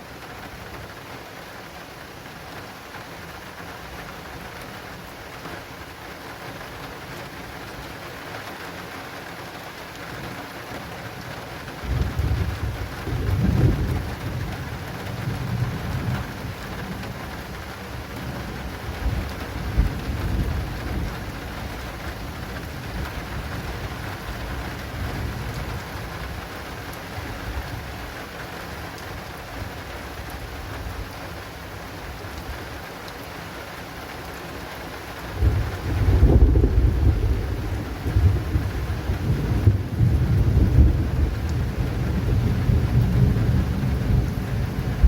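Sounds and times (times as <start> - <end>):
heavy rain on an awning: 0.0 - 45.0
thunder rumbling: 11.8 - 17.6, 18.2 - 26.6, 35.3 - 45.0.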